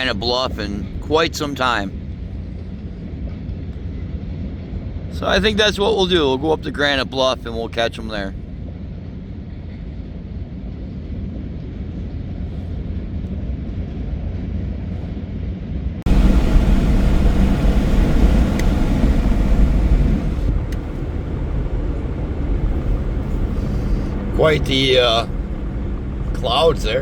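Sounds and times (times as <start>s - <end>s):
car road and engine noise: 16.0s - 27.0s.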